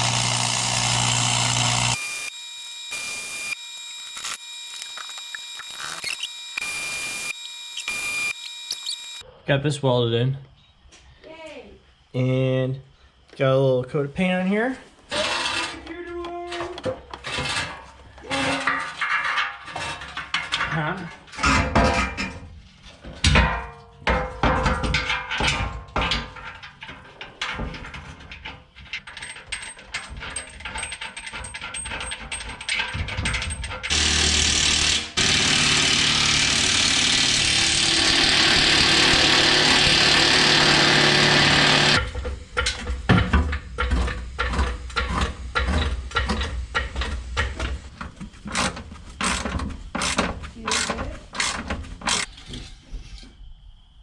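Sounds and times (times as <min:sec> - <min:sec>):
loud steady machine noise: 0:00.0 - 0:09.2, 0:33.9 - 0:42.1.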